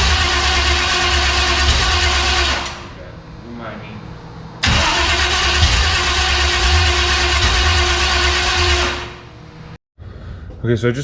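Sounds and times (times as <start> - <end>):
engine cranking by starter motor: 0.0 - 2.9, 4.6 - 9.3.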